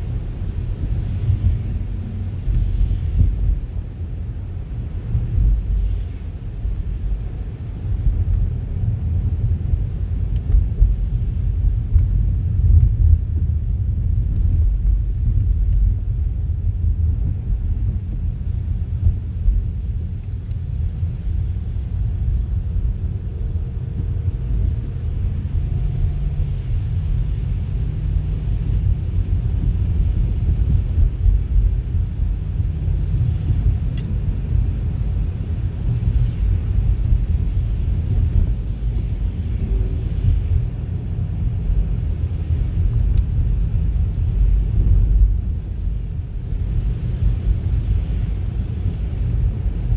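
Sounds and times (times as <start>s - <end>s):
car engine and road noise: 0.0s - 49.9s.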